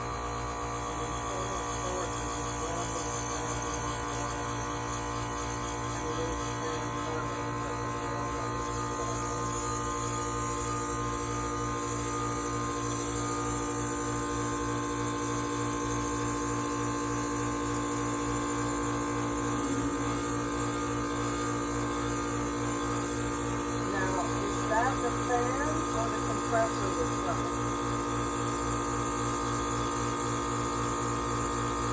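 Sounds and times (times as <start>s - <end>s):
air conditioner humming: 17.2s - 30.0s.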